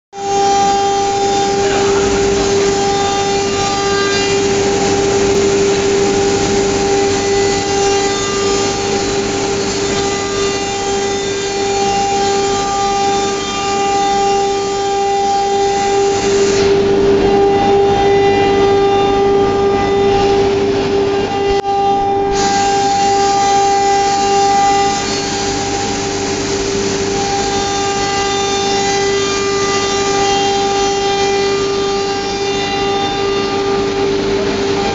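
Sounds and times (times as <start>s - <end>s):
router spindle whine: 0.2s - 34.9s
rough cutting noise: 1.3s - 11.1s.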